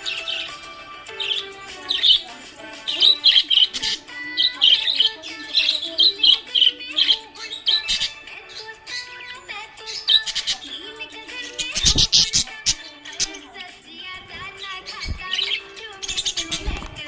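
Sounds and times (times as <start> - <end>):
budgerigar chirping: 0.0 - 13.4, 14.2 - 17.0
background music with held notes: 0.0 - 17.0.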